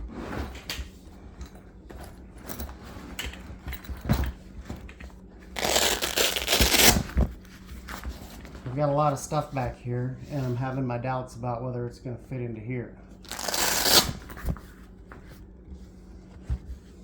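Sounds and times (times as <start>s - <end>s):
tool bag rustling: 0.0s - 8.6s, 13.2s - 14.8s.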